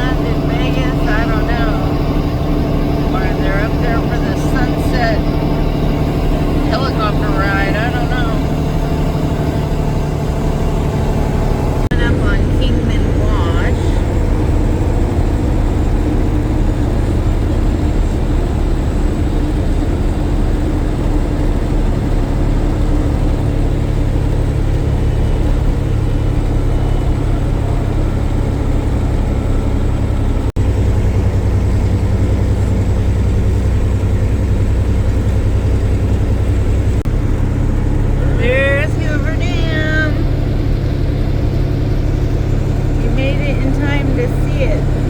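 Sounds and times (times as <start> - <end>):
vehicle engine and road noise: 0.0 - 45.0.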